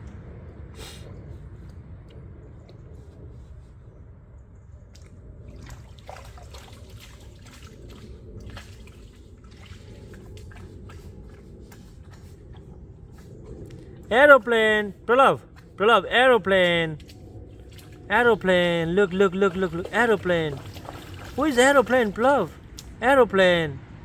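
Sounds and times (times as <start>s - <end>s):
steady low rumble: 0.0s - 24.0s
water dripping and splashing: 4.9s - 14.1s, 16.4s - 23.0s.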